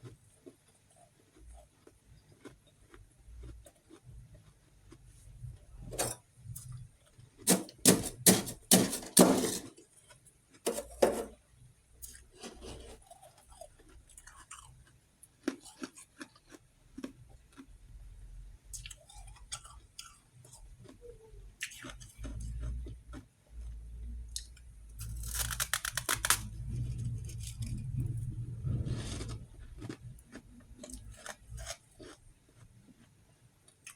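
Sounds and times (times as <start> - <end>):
crunching ice chunks: 7.4 - 9.7, 25.0 - 26.4.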